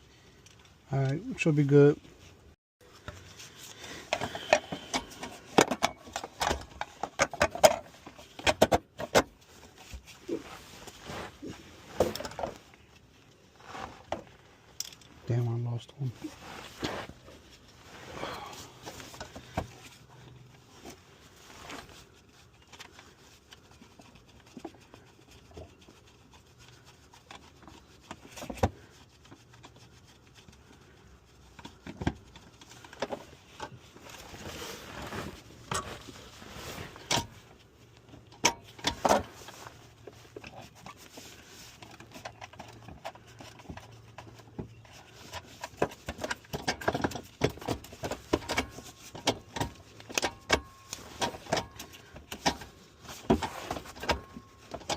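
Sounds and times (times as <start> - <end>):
rubbing and scraping: 1.4 - 54.9
clicks and knocks of car parts: 4.0 - 10.0, 31.5 - 33.8, 37.0 - 37.4, 38.1 - 39.6, 41.8 - 54.9.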